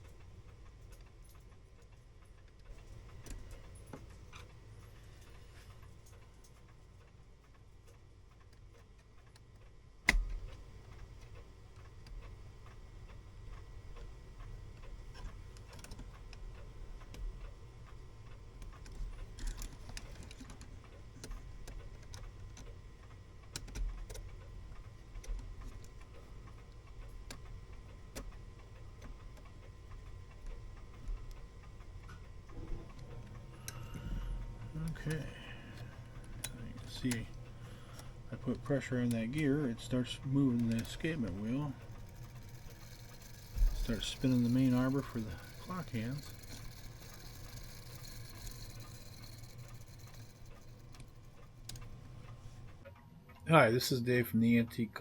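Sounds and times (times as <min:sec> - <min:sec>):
clockwork ticking: 0:00.0 - 0:52.9
small metallic clicks: 0:00.0 - 0:53.4
low hum: 0:10.1 - 0:53.9.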